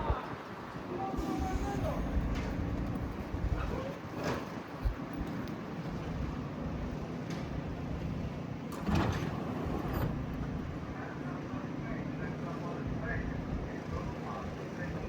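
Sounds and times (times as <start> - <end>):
subway train mechanical hum: 0.0 - 15.0
sliding door: 3.7 - 4.9, 7.2 - 10.7.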